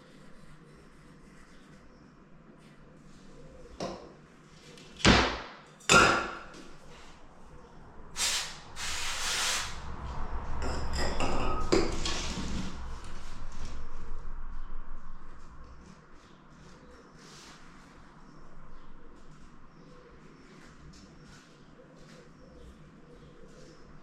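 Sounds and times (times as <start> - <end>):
handling and scraping noise: 8.2 - 14.2.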